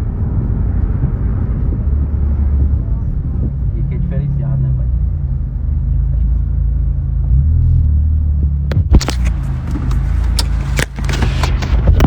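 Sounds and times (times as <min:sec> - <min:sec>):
car deep rumble: 0:00.0 - 0:12.0
sharp knocks or cracks: 0:08.7 - 0:11.8.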